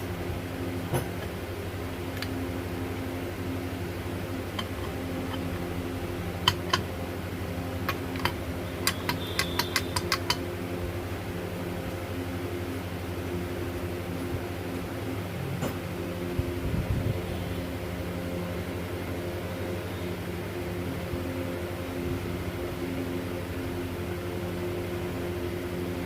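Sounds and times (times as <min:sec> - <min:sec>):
fan-like hum: 0:00.0 - 0:26.0
short metallic clicks and taps: 0:04.5 - 0:05.6, 0:06.4 - 0:06.9, 0:07.9 - 0:10.4.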